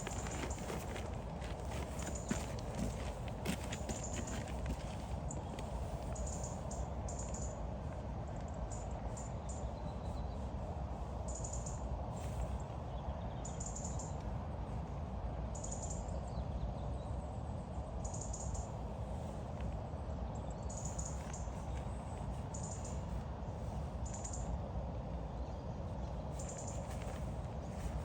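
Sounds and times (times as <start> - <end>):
bird calling: 0.0 - 5.6
low rumble and hiss: 0.0 - 28.0.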